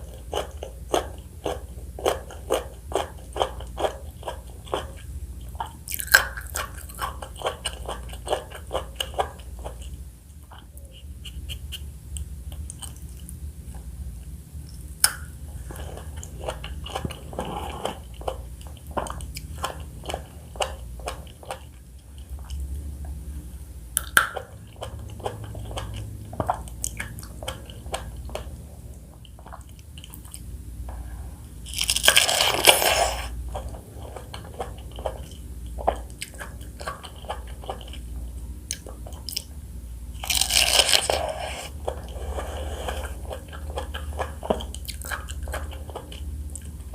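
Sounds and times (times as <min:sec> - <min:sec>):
fruit crunching: 0:00.0 - 0:13.9, 0:23.9 - 0:30.5, 0:31.6 - 0:46.9
wet chewing with smacking: 0:00.0 - 0:13.9, 0:14.6 - 0:22.8, 0:23.9 - 0:30.5, 0:31.7 - 0:39.6, 0:40.2 - 0:46.9.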